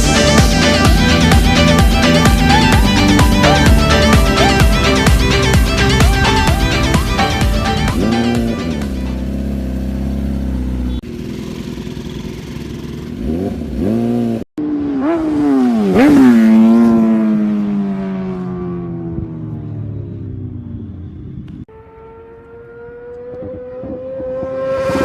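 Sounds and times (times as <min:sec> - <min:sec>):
background music with plucked guitar: 0:00.0 - 0:09.3
superbike engines revving: 0:00.0 - 0:19.1.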